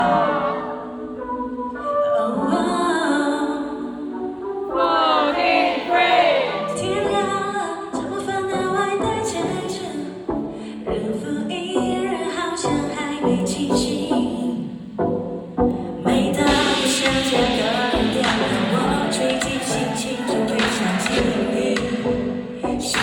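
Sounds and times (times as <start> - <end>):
woman singing: 0.0 - 14.9, 16.0 - 23.0.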